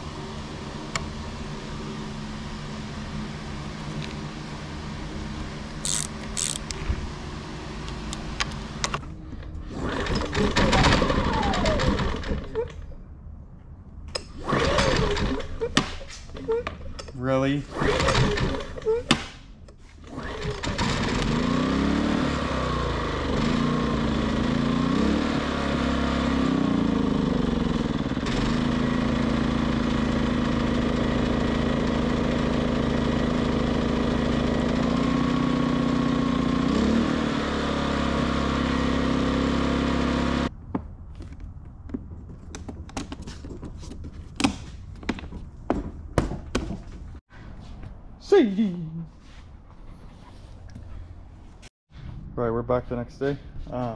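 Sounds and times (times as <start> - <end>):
generator engine surging: 0.0 - 12.8, 20.0 - 40.5.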